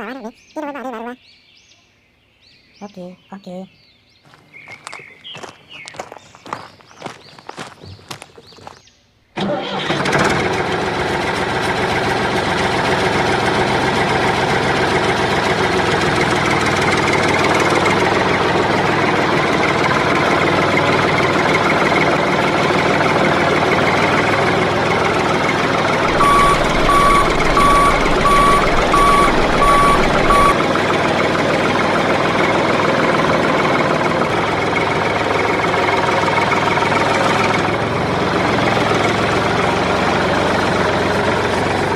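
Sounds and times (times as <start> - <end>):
vehicle engine running: 4.3 - 8.8, 9.8 - 41.9
short electronic beeps: 26.1 - 30.6.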